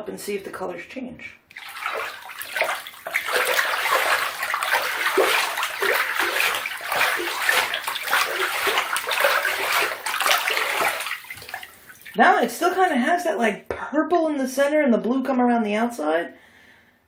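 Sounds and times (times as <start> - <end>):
hand swishing water in bathtub: 1.5 - 13.2.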